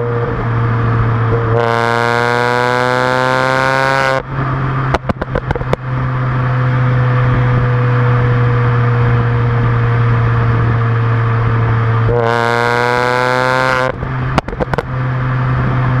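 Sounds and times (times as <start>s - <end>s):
car engine and exhaust cruising: 0.0s - 16.0s
exhaust pops and cracks: 4.9s - 5.8s, 13.9s - 14.9s.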